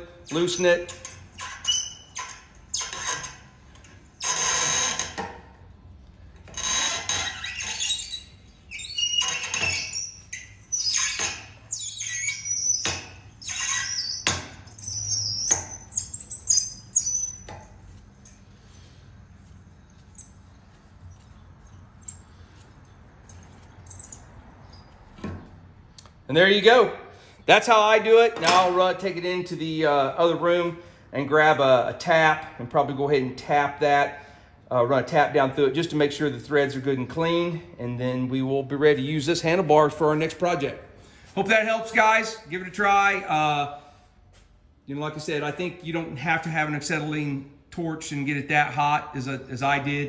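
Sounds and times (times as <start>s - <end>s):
metal bolt squealing and grating: 0.3s - 5.3s, 6.5s - 24.9s.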